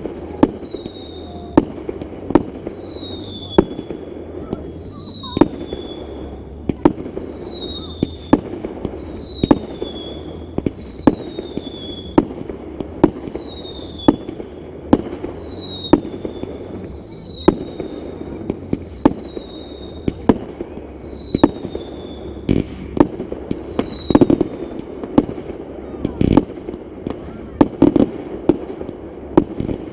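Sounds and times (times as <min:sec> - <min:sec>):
falling firework whistle: 0:00.0 - 0:29.9
fireworks bangs: 0:00.0 - 0:29.9.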